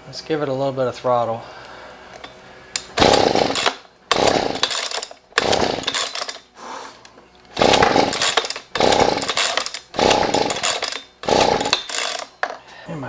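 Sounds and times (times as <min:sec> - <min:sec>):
small engine pull-started firing: 0:03.0 - 0:06.4, 0:07.5 - 0:12.3.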